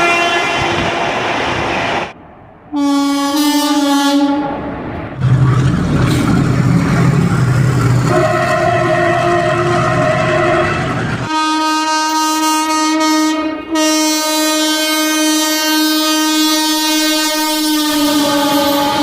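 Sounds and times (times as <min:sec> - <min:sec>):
train horn long note: 0:00.0 - 0:01.0, 0:02.7 - 0:04.6, 0:08.1 - 0:19.0
train rumble: 0:00.0 - 0:12.4, 0:13.4 - 0:19.0.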